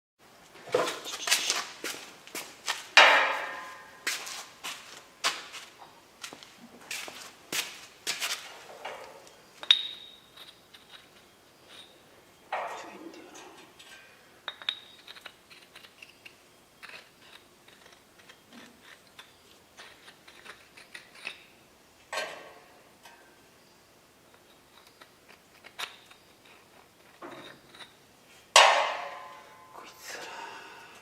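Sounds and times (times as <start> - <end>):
loud metallic clank: 3.0 - 4.0, 28.6 - 29.7
metal tools clicking and clinking: 8.8 - 12.9.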